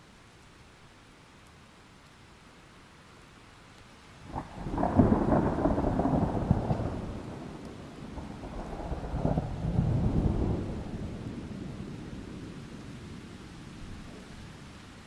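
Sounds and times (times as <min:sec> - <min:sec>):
rain: 0:00.0 - 0:15.0
deep thunder rumble: 0:04.3 - 0:13.0.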